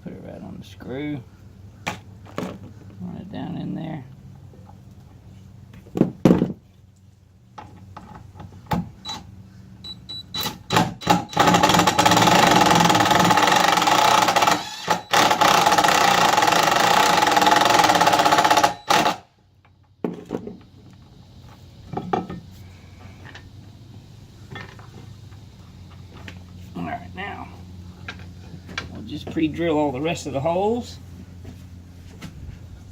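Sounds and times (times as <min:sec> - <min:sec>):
power drill driving screw: 0:10.4 - 0:19.2.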